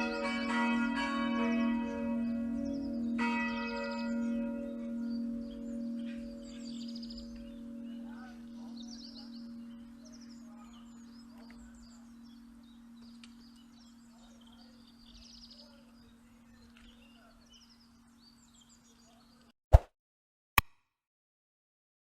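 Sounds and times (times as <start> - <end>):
church bell hum: 0.0 - 17.0
small birds chirping: 1.4 - 19.6.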